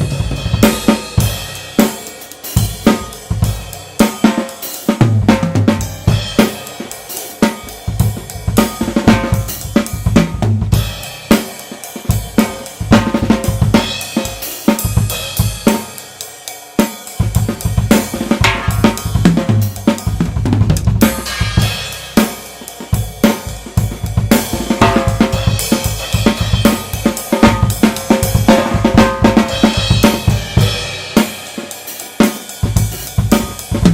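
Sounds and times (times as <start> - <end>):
bass drum: 0.0 - 3.8, 5.0 - 6.9, 7.5 - 11.4, 12.1 - 16.0, 17.2 - 31.4, 32.6 - 33.9
cymbals: 0.0 - 20.4, 21.0 - 33.9
snare drum: 4.0 - 16.0, 16.8 - 33.9
hi-hat: 5.8 - 10.1.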